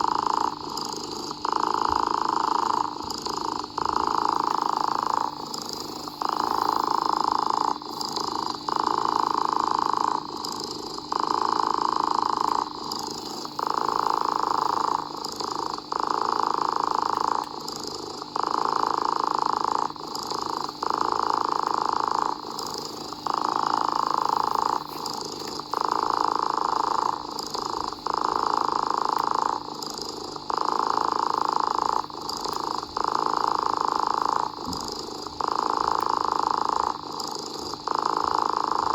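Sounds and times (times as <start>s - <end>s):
cat purring: 0.0s - 38.9s.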